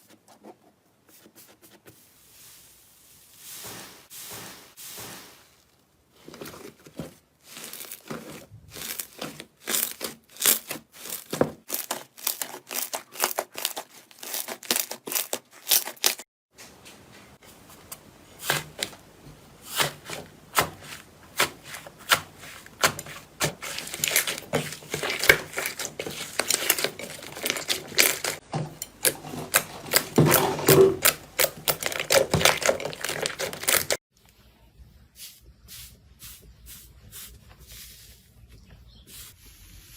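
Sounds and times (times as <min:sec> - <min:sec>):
slime popping and crackling: 0:23.4 - 0:28.4, 0:29.5 - 0:34.0.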